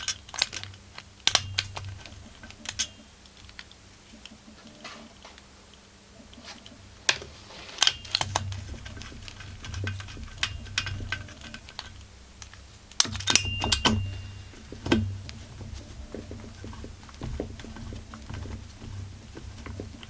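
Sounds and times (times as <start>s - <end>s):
hand tools clinking on metal: 7.8s - 20.0s.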